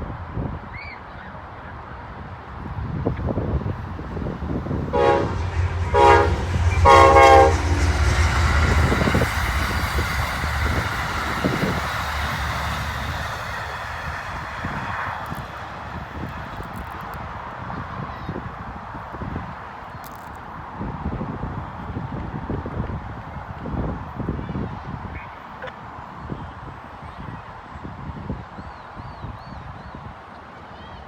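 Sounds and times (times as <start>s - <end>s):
train rumble and clatter: 2.0s - 20.4s
train horn blasts: 4.2s - 13.6s.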